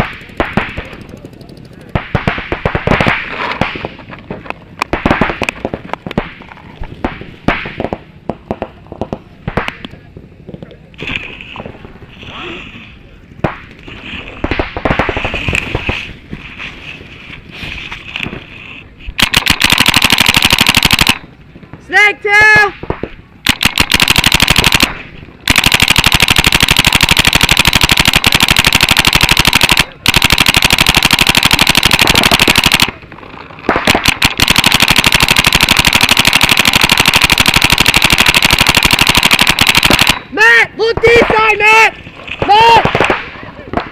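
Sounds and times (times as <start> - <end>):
paintball markers firing rapidly: 0.0 - 3.9, 19.2 - 21.2, 22.9 - 33.0, 33.7 - 40.2.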